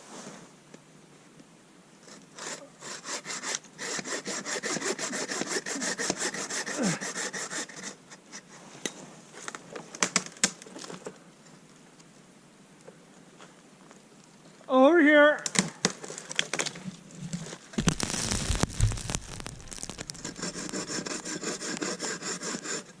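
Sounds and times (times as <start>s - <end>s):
hand saw cutting wood: 2.3s - 8.0s, 20.3s - 23.0s.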